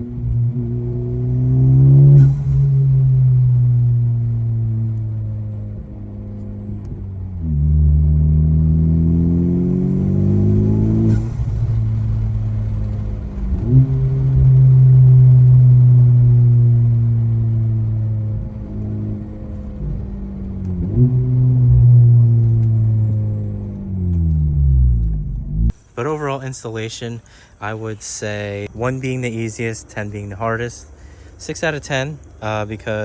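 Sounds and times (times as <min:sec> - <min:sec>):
car engine accelerating: 0:00.0 - 0:26.4.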